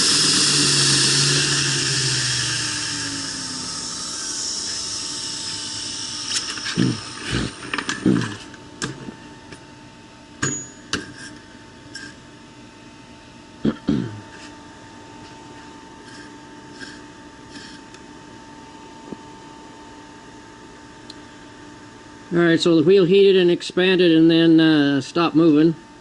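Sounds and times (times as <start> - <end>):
belt grinder winding down: 0.0 - 8.5
faint steady whine: 0.0 - 26.0.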